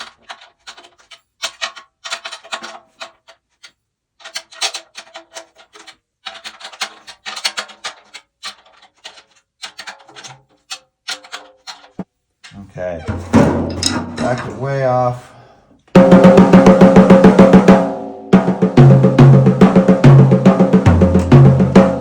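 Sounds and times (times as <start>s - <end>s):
snare drum played with sticks: 13.0s - 14.6s, 16.0s - 22.0s.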